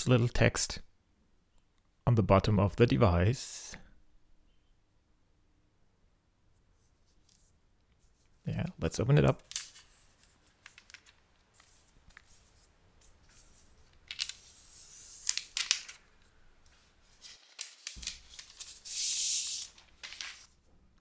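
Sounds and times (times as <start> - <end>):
plastic wrap and cardboard crinkling: 17.1 - 20.6.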